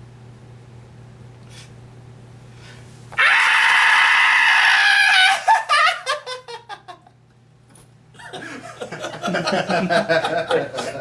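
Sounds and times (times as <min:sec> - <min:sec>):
man screaming: 0:03.2 - 0:05.7.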